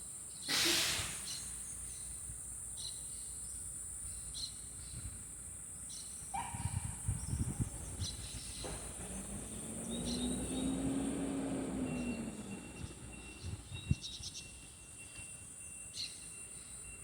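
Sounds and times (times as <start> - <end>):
bird chirps: 7.2 - 10.9, 11.8 - 17.0.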